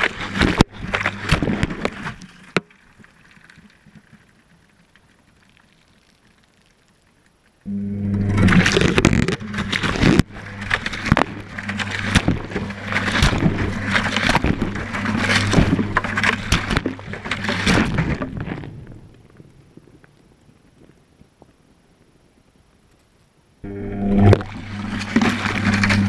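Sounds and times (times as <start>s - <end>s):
water sloshing and clattering: 0.0s - 6.3s, 8.1s - 19.4s, 24.2s - 26.0s
washing machine motor hum: 7.7s - 18.2s, 23.6s - 26.0s.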